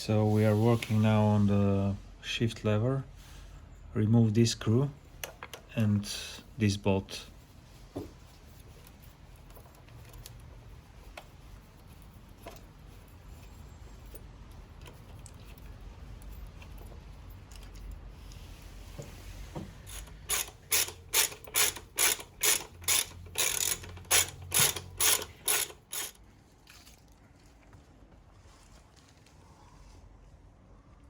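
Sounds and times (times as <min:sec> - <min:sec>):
ratchet wrench clicking: 0:19.9 - 0:26.2.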